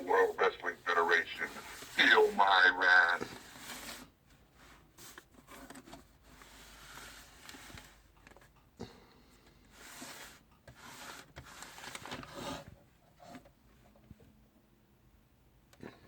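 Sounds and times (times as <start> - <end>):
scraping and rustling on plastic toy: 0.0 - 8.5, 9.6 - 13.5.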